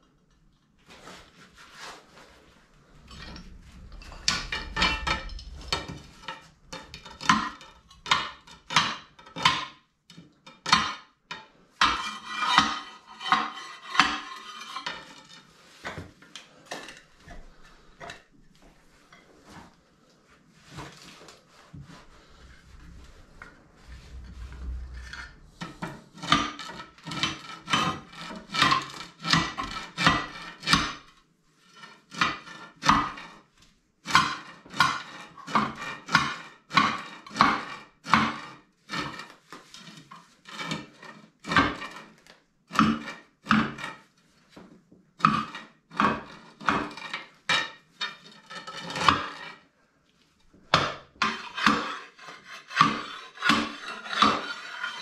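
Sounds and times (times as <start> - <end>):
metal clanks and scrapes: 0.3 - 19.8, 20.6 - 33.5, 45.2 - 49.6, 50.6 - 55.0.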